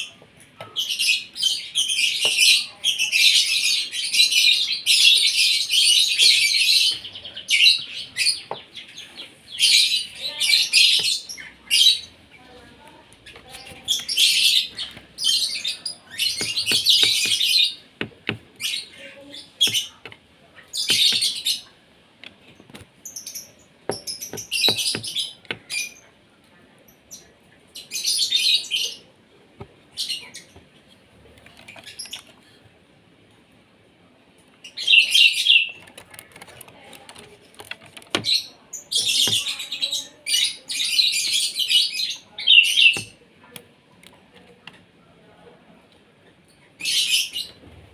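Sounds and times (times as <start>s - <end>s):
starling chattering and whistling: 13.2s - 17.9s, 20.7s - 21.7s.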